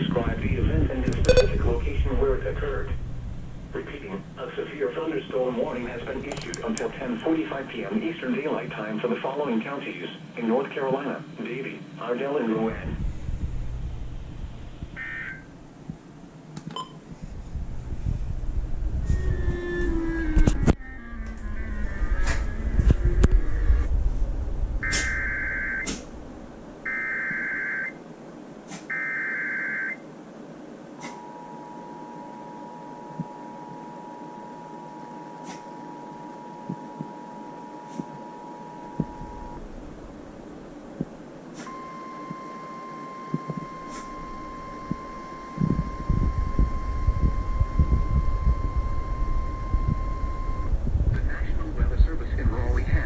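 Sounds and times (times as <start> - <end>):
loud rumble: 0.0 - 7.9, 12.7 - 15.8, 17.3 - 26.8
radio crackles: 0.0 - 16.0, 24.8 - 26.2, 26.9 - 28.0, 31.0 - 40.2, 40.9 - 53.0
faint radio hiss: 0.0 - 17.3, 22.2 - 53.0
two-tone attention signal: 1.2 - 1.7, 24.8 - 25.9, 26.9 - 28.0, 28.9 - 30.0, 41.7 - 50.7
steady single-pitch alert tone: 1.2 - 1.8, 24.8 - 25.9, 26.8 - 28.0, 28.9 - 30.1, 31.1 - 39.7, 41.7 - 50.7
warbling digital data tone: 24.8 - 25.9.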